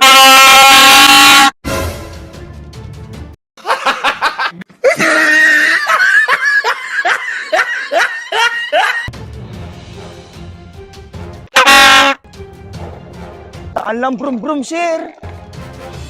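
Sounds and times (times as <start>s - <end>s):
music: 1.6s - 3.4s, 9.1s - 16.0s
person laughing: 3.6s - 9.1s.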